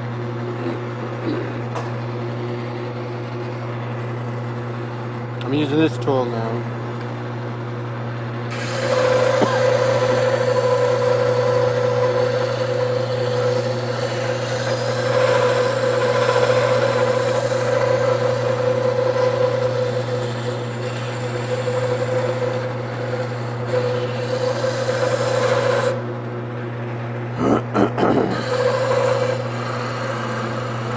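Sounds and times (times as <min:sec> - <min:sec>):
wood lathe humming and whining: 0:00.0 - 0:30.9
turning tool scraping wood: 0:08.5 - 0:26.1, 0:28.0 - 0:30.9.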